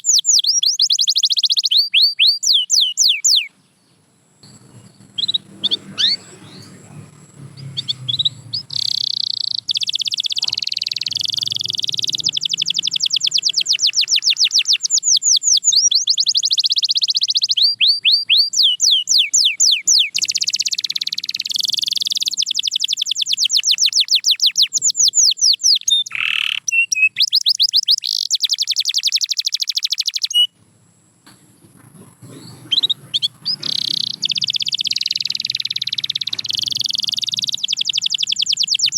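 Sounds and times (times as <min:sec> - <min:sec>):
canary singing trills: 0:00.0 - 0:30.6, 0:31.3 - 0:38.9.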